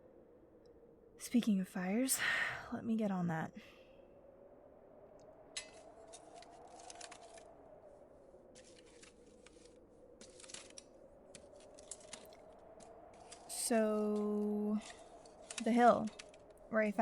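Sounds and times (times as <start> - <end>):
low steady hum: 0.0 - 17.0
kindling and paper rustling: 5.6 - 7.5, 8.5 - 12.4.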